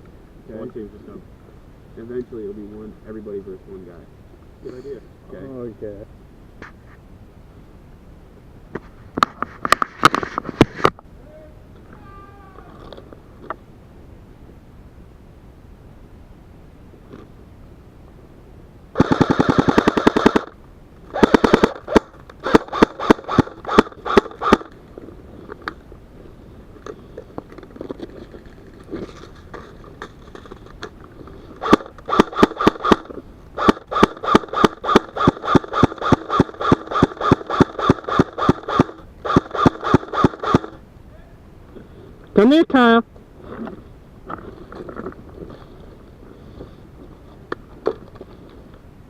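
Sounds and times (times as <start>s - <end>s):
airsoft guns firing: 19.0s - 24.7s, 31.6s - 40.8s.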